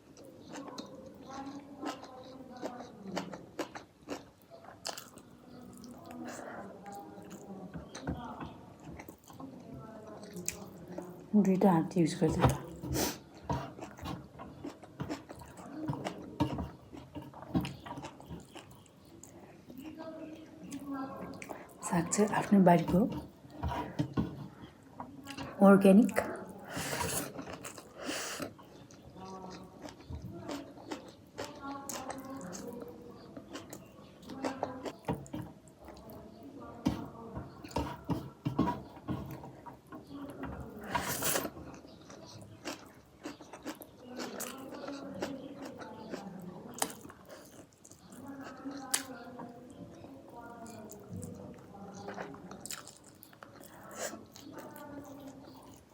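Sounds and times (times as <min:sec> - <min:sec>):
chewing mouth clicks and smacks: 0:00.0 - 0:07.5, 0:13.3 - 0:16.3, 0:16.9 - 0:19.9, 0:41.1 - 0:49.2, 0:50.6 - 0:55.9
wet chewing: 0:00.0 - 0:11.2, 0:12.3 - 0:55.9.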